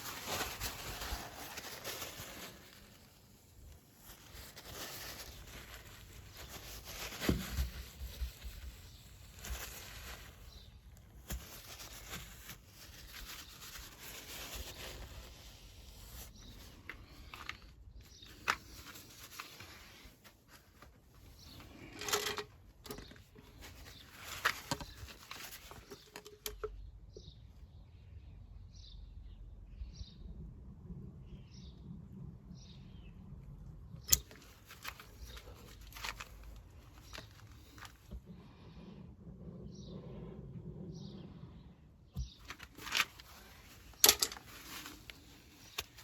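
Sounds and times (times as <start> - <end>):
hands clicking and rustling: 42.2 - 46.0.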